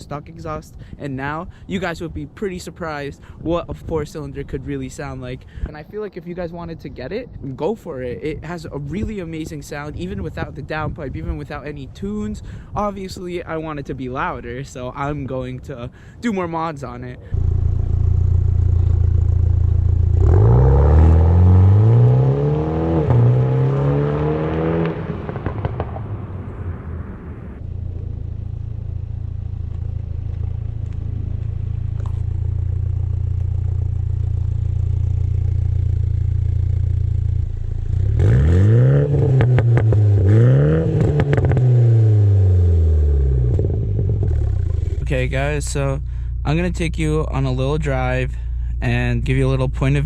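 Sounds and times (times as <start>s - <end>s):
car engine idling and revving: 17.3s - 26.7s, 27.6s - 50.0s
exhaust crackles and pops: 17.3s - 50.0s.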